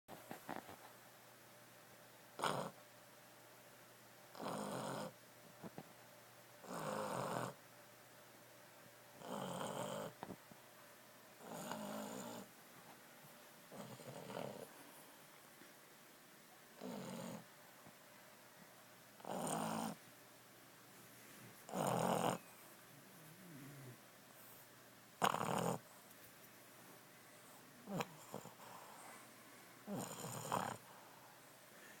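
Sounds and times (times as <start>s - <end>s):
dog snoring: 2.4s - 2.8s, 4.3s - 5.2s, 6.6s - 7.6s, 9.2s - 10.2s, 11.4s - 12.5s, 13.7s - 14.7s, 16.8s - 17.5s, 19.2s - 20.0s, 21.7s - 22.5s, 23.1s - 24.0s, 25.2s - 25.8s, 27.8s - 29.2s, 29.8s - 31.0s.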